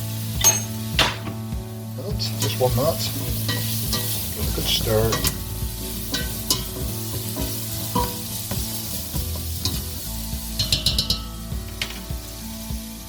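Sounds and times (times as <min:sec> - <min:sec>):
food sizzling in oil: 0:00.0 - 0:13.0
utensil scraping pan: 0:02.4 - 0:08.9.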